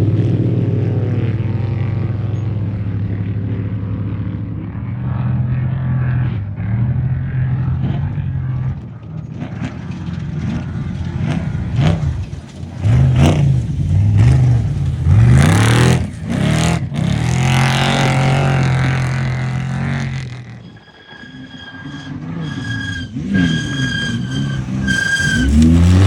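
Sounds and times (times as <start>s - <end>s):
truck engine revving: 0.0s - 26.0s
rushing noise: 18.4s - 26.0s.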